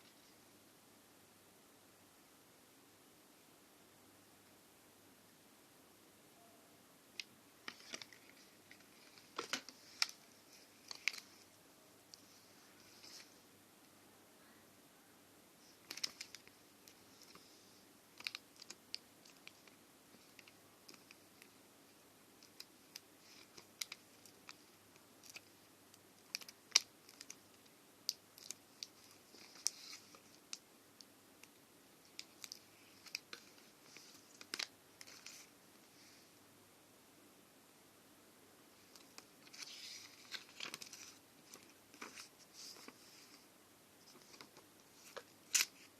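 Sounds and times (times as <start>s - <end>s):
packaging rustling: 7.6s - 11.4s, 38.9s - 43.4s.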